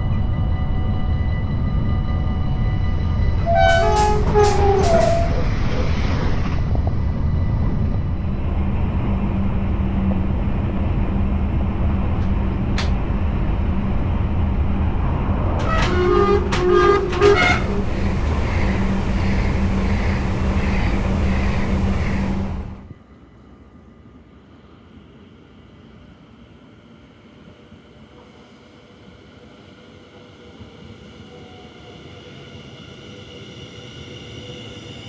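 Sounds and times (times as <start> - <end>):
train rumbling: 0.0 - 23.0
train horn short blasts: 3.4 - 6.6, 12.1 - 13.2, 15.1 - 22.8.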